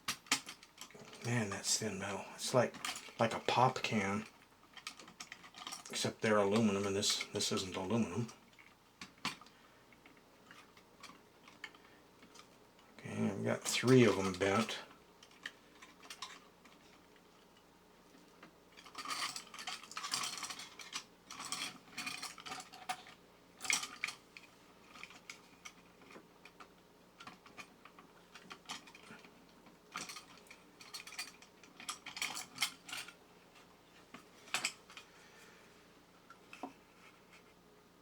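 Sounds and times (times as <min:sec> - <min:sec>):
sheet-metal toy clicking and scraping: 0:02.7 - 0:07.2, 0:14.0 - 0:17.1, 0:18.7 - 0:29.3, 0:29.9 - 0:33.2, 0:34.1 - 0:35.1.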